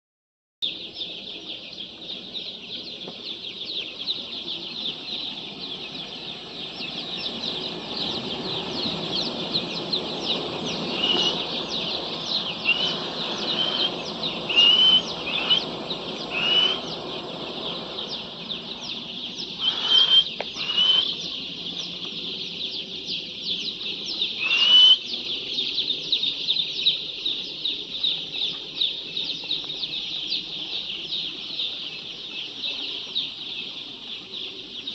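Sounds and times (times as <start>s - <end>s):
chickens peeping chorus: 0.6s - 34.9s
louder chicken calls: 10.8s - 17.0s, 19.5s - 21.3s, 24.4s - 25.1s.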